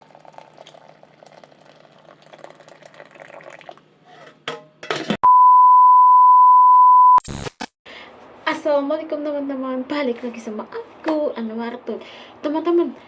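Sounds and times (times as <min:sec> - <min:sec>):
steady electronic beep: 0:05.2 - 0:07.4.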